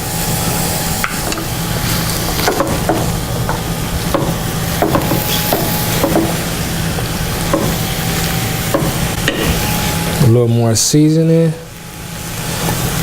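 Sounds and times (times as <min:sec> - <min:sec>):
food sizzling in a pan: 0:00.0 - 0:13.0
steady low hum: 0:00.0 - 0:13.0
spoon scraping a pan: 0:01.1 - 0:06.5.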